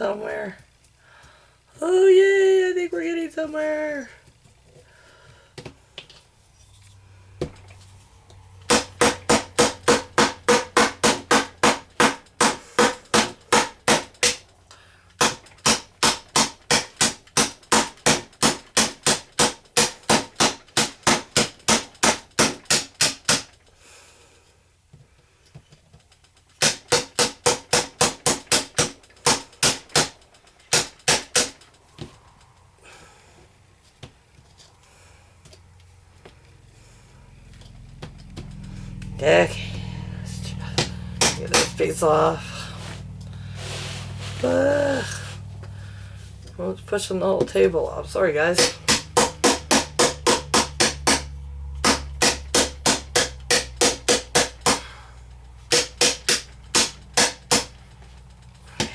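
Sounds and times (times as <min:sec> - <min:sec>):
hammer striking chisel: 0:08.7 - 0:14.4, 0:15.2 - 0:23.5, 0:26.6 - 0:31.6, 0:40.8 - 0:41.9, 0:48.5 - 0:54.9, 0:55.7 - 0:57.8.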